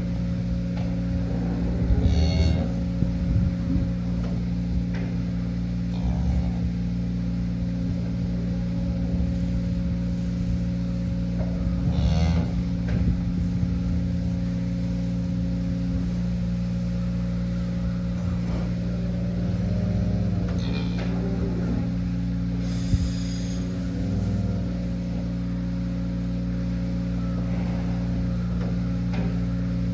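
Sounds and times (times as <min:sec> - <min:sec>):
steady mechanical hum: 0:00.0 - 0:29.9
cattle mooing: 0:01.2 - 0:03.0, 0:05.9 - 0:06.9, 0:09.0 - 0:28.8.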